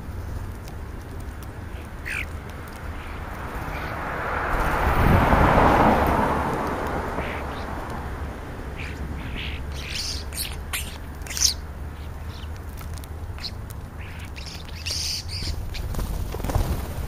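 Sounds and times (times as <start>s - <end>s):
starlings squawking and chirping: 1.6s - 4.9s, 6.8s - 16.8s.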